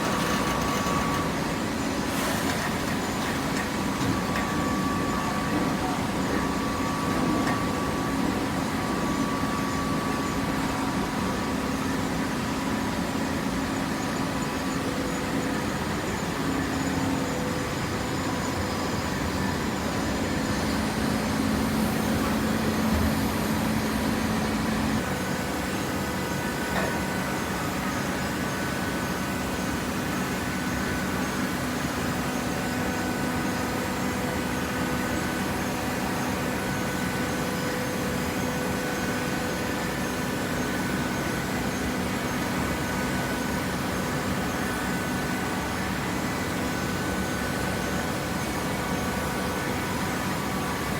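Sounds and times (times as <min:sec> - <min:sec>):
hydraulic baler humming: 0:00.0 - 0:11.5, 0:18.2 - 0:31.6.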